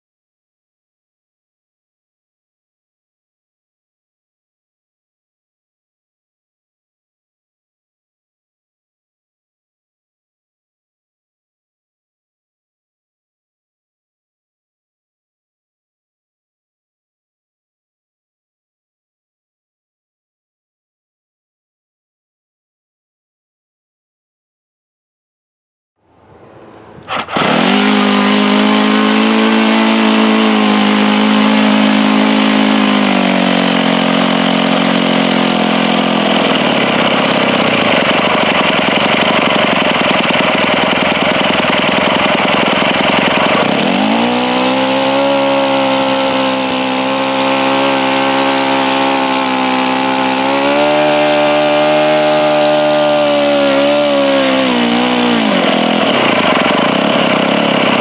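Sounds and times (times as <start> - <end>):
model engine running loudly: 26.4 - 58.0.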